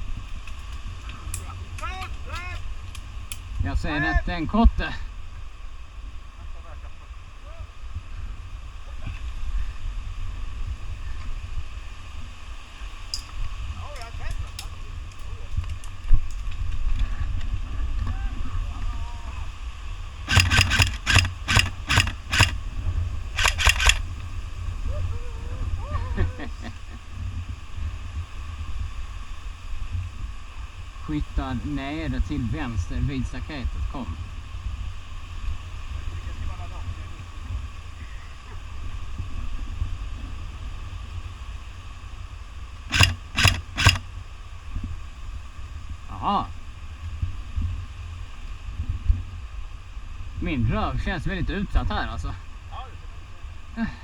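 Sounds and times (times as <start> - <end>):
wind rumble on microphone: 0.0 - 20.3, 22.5 - 42.9, 44.0 - 53.8
airsoft gun shots: 20.3 - 22.6, 23.4 - 24.0, 42.9 - 44.1.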